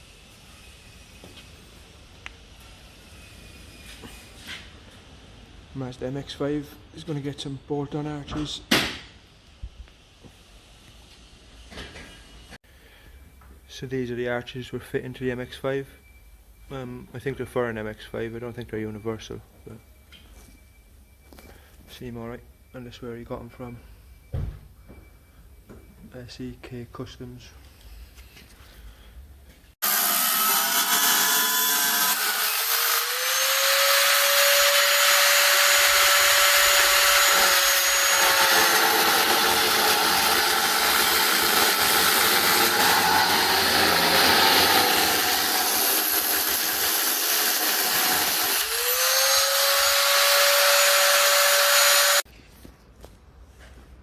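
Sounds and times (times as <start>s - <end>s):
power tool running hard: 29.8s - 52.2s.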